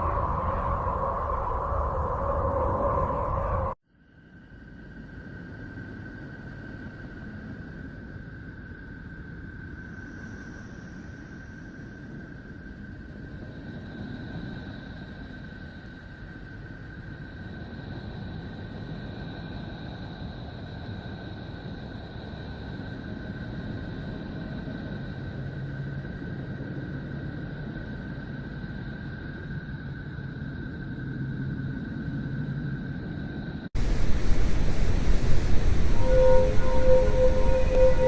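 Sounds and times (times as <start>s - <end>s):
low rumbling drone: 0.0s - 3.8s, 33.8s - 38.0s
thin high held tones: 33.8s - 38.0s.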